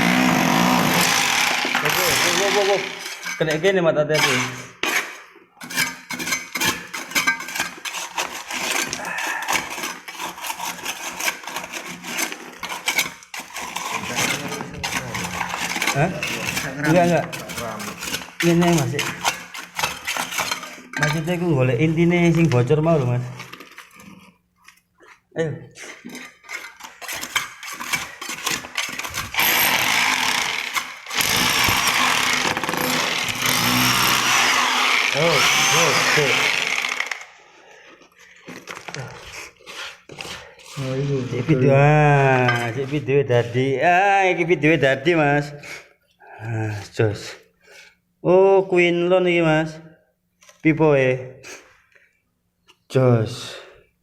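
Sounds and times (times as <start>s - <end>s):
hand tools chipping concrete: 0.0s - 24.2s, 25.8s - 37.4s.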